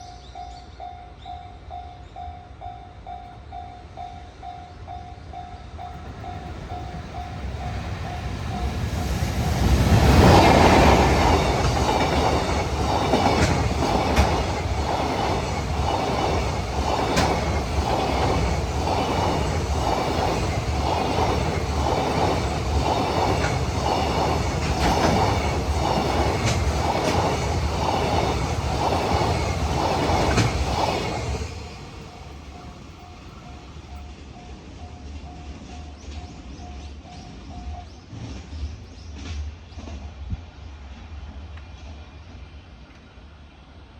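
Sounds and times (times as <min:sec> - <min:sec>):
freight train passing: 0:00.0 - 0:43.9
wheels clattering over rail joints: 0:06.0 - 0:32.0.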